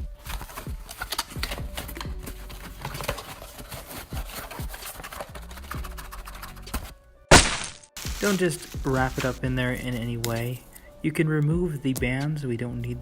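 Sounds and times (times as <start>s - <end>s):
bubble wrap crinkling: 7.3s - 10.6s.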